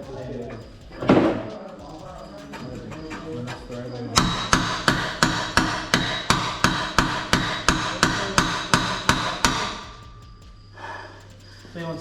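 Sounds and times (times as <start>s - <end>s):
hammer striking metal: 0.0s - 10.7s.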